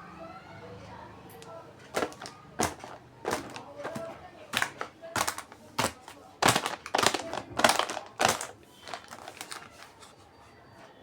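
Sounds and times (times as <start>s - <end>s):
plastic packaging crinkling: 1.4s - 10.2s.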